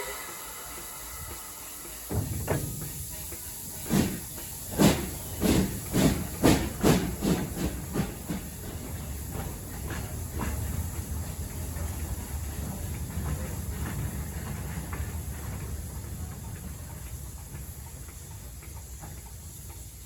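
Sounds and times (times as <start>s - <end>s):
steam locomotive rumbling: 0.0s - 20.0s.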